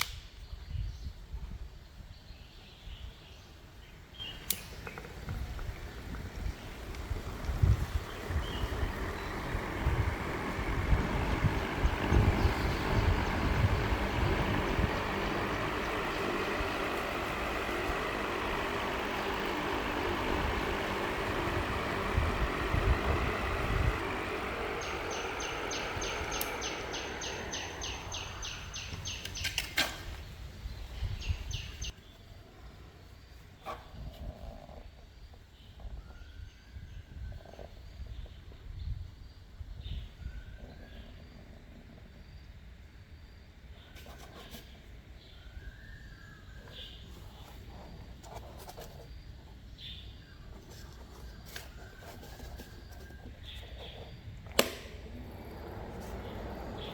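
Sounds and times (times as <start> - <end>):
electric motor whirring: 4.9 - 29.4
loud click: 54.5 - 55.1.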